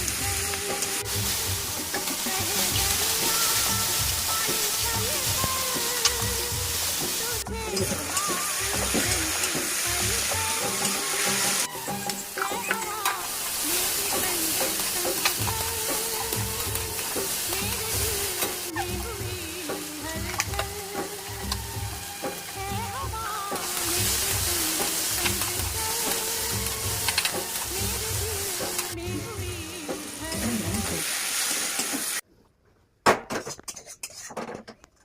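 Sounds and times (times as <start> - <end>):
food sizzling in a pan: 0.0 - 32.2
spatula clicking against pan: 5.4 - 6.3, 11.9 - 18.6, 19.7 - 20.8, 21.4 - 22.5, 23.6 - 28.9.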